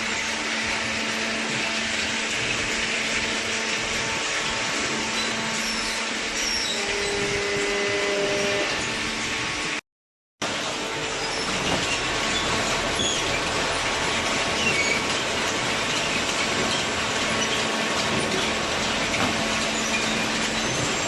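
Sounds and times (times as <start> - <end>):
cardboard baler running: 0.0 - 8.5, 10.4 - 21.0
small high squeaks: 5.1 - 7.4.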